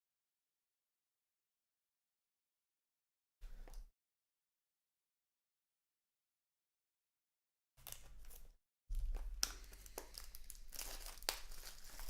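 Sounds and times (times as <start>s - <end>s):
wrapper crinkling and tearing: 7.8s - 12.0s.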